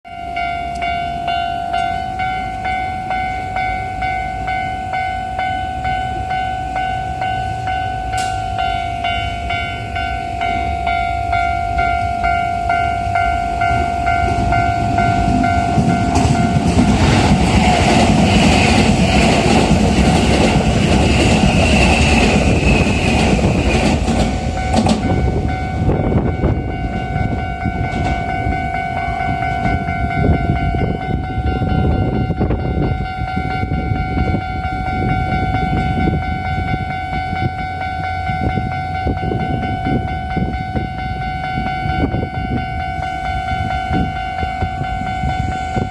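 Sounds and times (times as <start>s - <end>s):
level crossing bell ringing: 0.1s - 17.4s, 24.3s - 45.9s
electric train passing: 0.1s - 45.9s.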